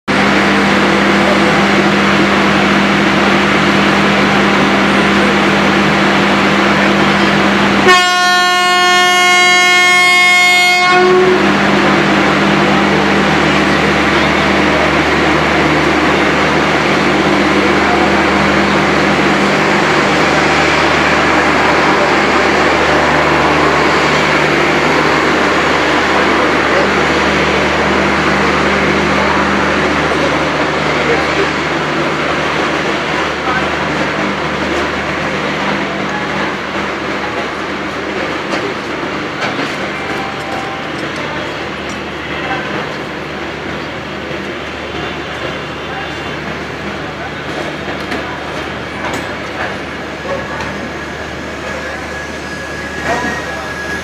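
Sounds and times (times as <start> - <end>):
electric locomotive hum: 0.1 - 54.0
locomotive horn blast: 7.8 - 11.7.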